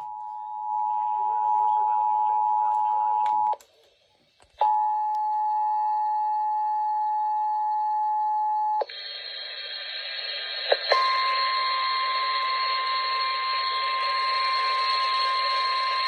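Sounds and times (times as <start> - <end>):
steady high alarm tone: 10.9 - 16.0.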